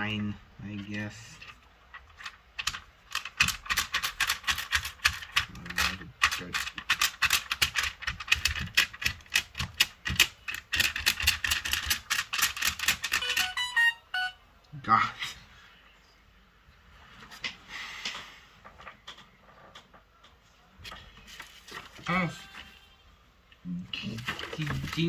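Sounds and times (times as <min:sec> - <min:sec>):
short keypad beeps: 0:13.2 - 0:14.4.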